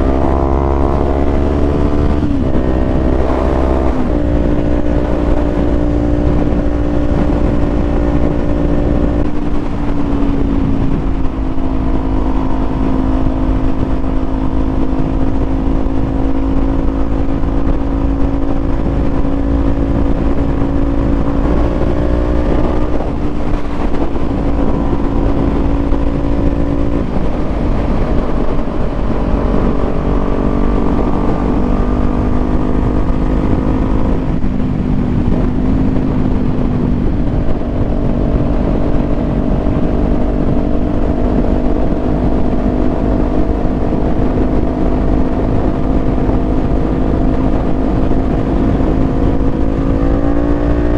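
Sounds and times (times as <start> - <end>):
motorcycle engine running: 0.0 - 50.9
wind rumble: 0.0 - 50.9.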